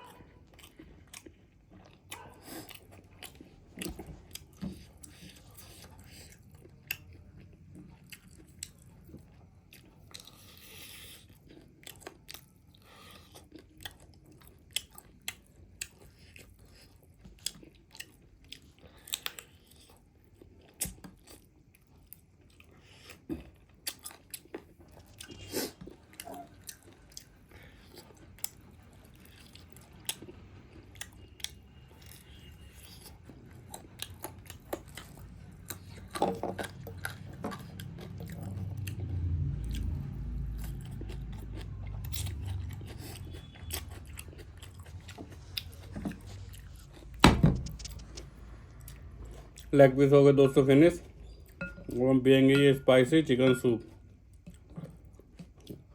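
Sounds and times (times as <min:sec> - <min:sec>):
chewing crispy fried chicken: 0:00.0 - 0:47.2, 0:53.1 - 0:55.9.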